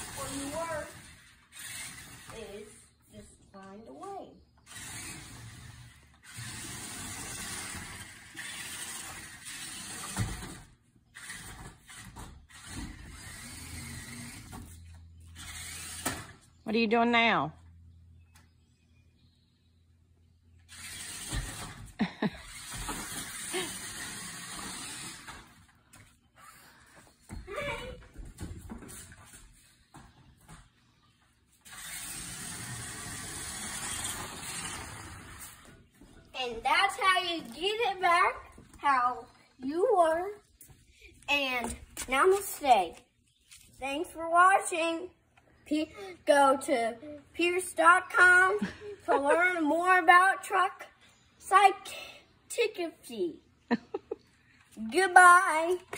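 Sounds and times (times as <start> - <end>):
toy truck motor whirring: 0.0 - 3.0, 4.6 - 16.6, 20.6 - 25.8, 31.6 - 35.8
toy truck motor hiss: 12.6 - 14.3, 15.4 - 16.2, 22.4 - 25.4, 31.6 - 35.4.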